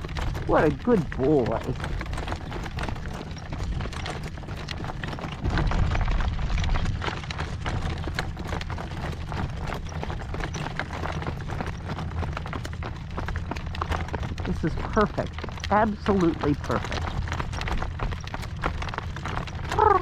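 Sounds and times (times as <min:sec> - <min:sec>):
wind buffeting microphone: 0:00.0 - 0:15.3
horse hooves clip-clopping: 0:00.0 - 0:20.0.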